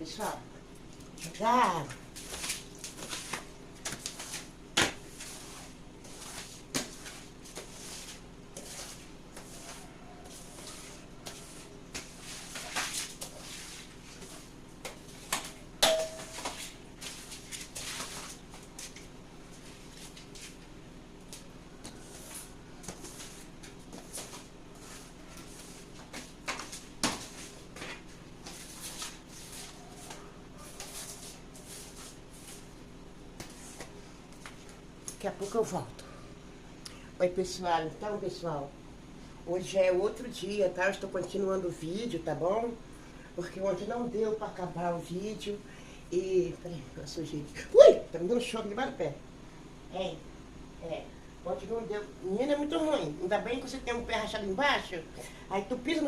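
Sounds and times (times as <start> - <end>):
floor scrubbing: 2.1 - 15.6, 16.2 - 20.7, 21.3 - 32.8, 33.4 - 34.7.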